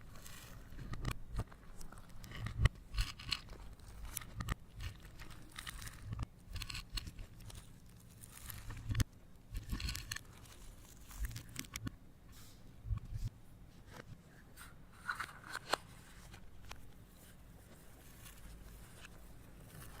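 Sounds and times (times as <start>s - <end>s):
slime crackling and crunching: 1.7s - 11.7s.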